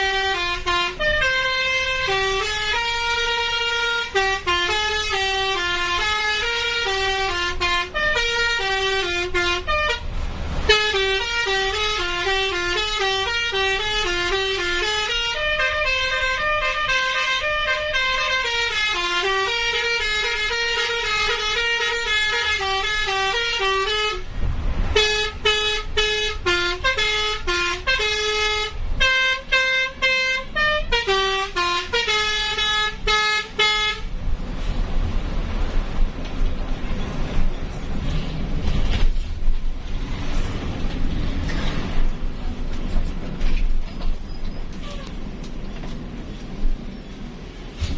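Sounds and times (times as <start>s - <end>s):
multi-tone bus horn tune: 0.0s - 35.0s, 44.7s - 47.9s.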